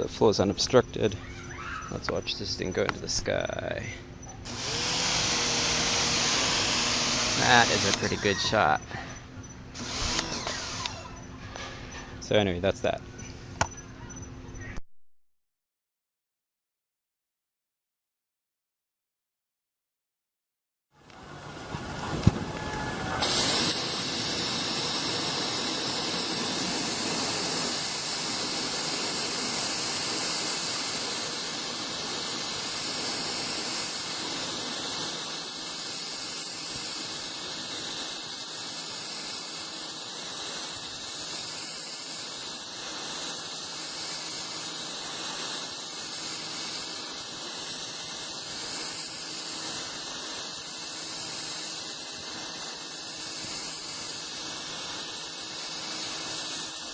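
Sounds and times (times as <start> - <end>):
pressure washer spraying water: 4.5 - 8.8, 23.2 - 56.9.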